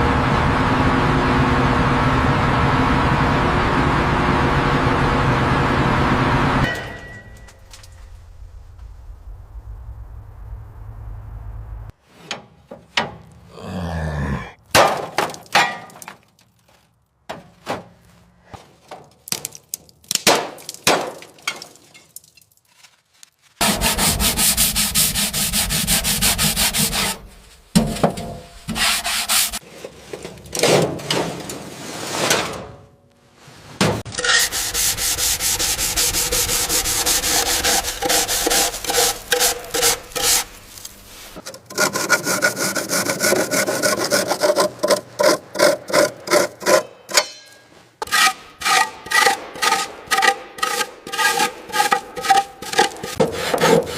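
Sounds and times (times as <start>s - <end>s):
hand sanding on vehicle: 23.6s - 28.0s, 28.7s - 29.6s, 34.2s - 46.8s, 48.0s - 53.9s
rubbing strokes and knocks: 23.6s - 30.2s, 33.4s - 46.9s, 47.7s - 53.9s.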